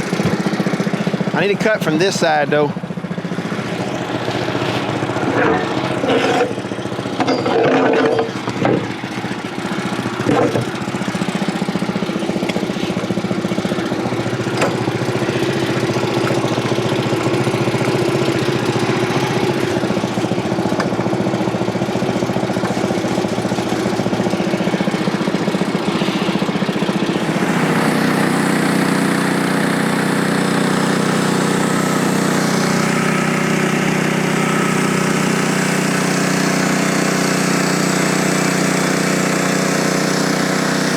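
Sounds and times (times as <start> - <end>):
sawmill engine running: 0.0 - 40.9.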